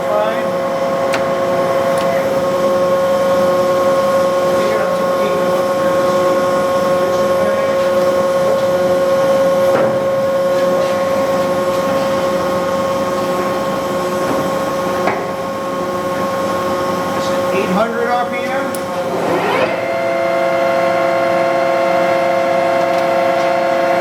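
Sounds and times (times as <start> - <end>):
motor hum: 0.0 - 4.6, 18.6 - 24.0
lathe gears whining: 0.4 - 7.4, 17.5 - 24.0.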